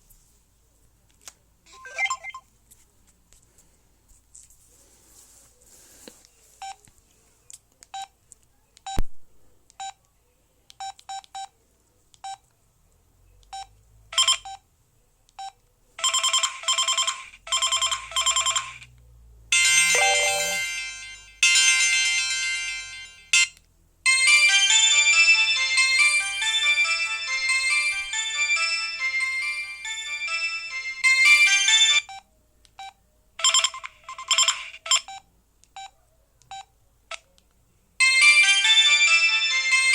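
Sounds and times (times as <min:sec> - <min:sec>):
mobile phone beeps: 0:01.7 - 0:02.4, 0:19.7 - 0:20.7
phone ringtone melody: 0:19.6 - 0:23.0
chiming tones: 0:19.7 - 0:21.0.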